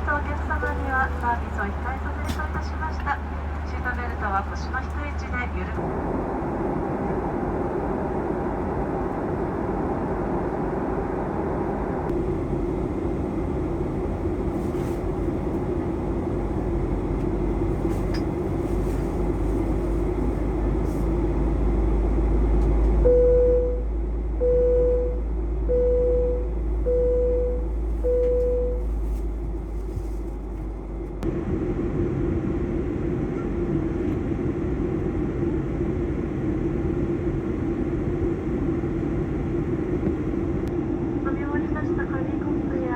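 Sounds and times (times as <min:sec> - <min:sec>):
deep rumble: 0:00.0 - 0:42.9
jet engines and airflow: 0:00.0 - 0:42.9
short beeps: 0:23.1 - 0:23.8, 0:24.4 - 0:28.8.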